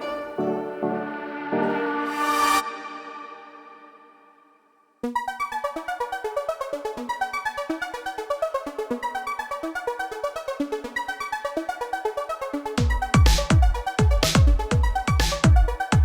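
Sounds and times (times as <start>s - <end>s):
synthesizer fast arpeggio: 5.1s - 16.0s.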